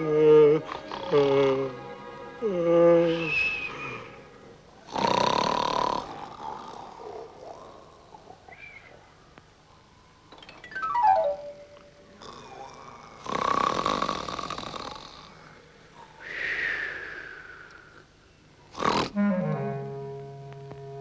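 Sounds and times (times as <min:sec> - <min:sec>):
orchestral music: 0:00.0 - 0:04.6
rattling snore: 0:00.1 - 0:01.7, 0:04.9 - 0:08.2, 0:12.2 - 0:15.5, 0:18.7 - 0:19.4
falling run of musical notes: 0:10.4 - 0:12.0.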